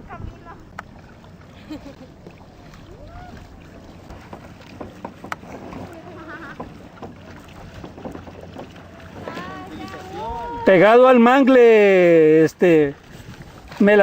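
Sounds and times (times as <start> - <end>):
wind noise on microphone: 0.0 - 0.8, 13.0 - 13.8
paddle strokes splashing: 0.0 - 14.0
short knocks: 6.5 - 9.4.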